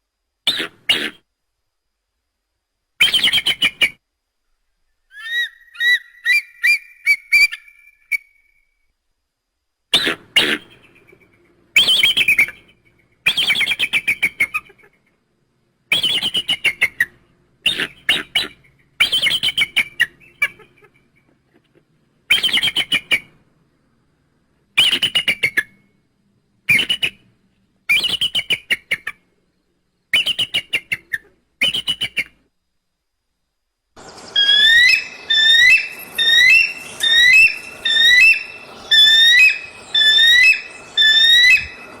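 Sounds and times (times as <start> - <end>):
creature squawking calls: 34.4 - 42.0.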